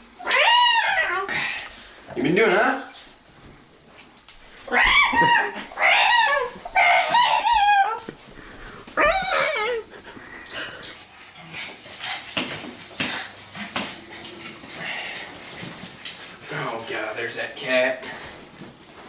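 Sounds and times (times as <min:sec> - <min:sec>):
dog whimpering and whining: 0:00.2 - 0:01.6, 0:04.7 - 0:08.2, 0:09.0 - 0:10.7.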